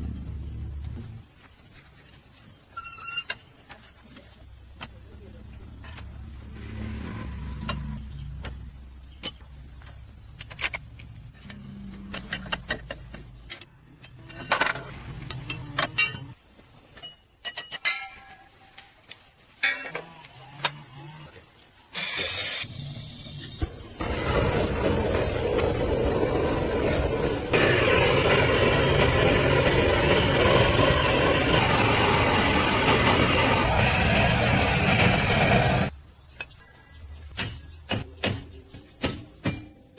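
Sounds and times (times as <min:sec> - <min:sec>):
engine running loudly: 0:24.0 - 0:35.9.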